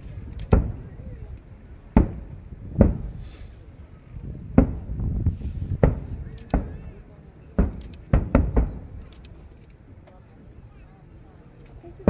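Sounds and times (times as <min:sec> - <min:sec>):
firework shells booming: 0:00.0 - 0:09.6
faint firework crackles: 0:00.0 - 0:12.0.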